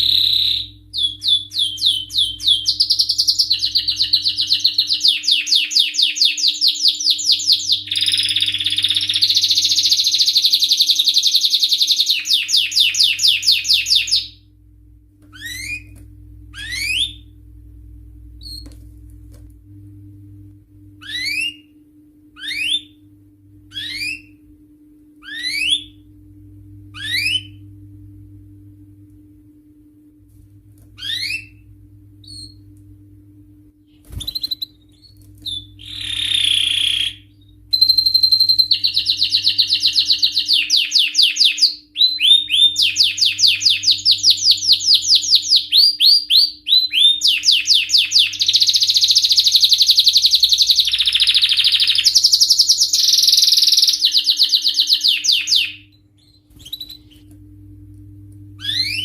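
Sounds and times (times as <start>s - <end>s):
canary singing trills: 0.0s - 14.4s, 16.5s - 17.3s, 21.0s - 21.7s, 22.4s - 23.0s, 25.2s - 26.0s, 27.0s - 27.6s, 31.0s - 31.6s, 34.1s - 57.3s, 58.6s - 59.0s
faint steady hum: 0.0s - 59.0s.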